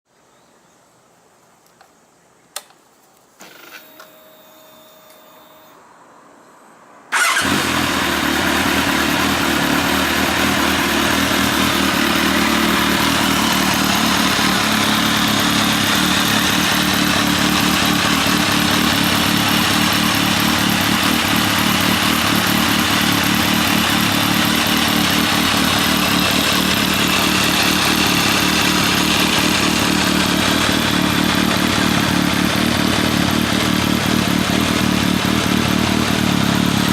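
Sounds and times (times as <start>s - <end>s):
faint clicks: 1.4s - 3.3s
motorcycle engine starting and idling: 3.4s - 5.8s, 7.1s - 36.9s.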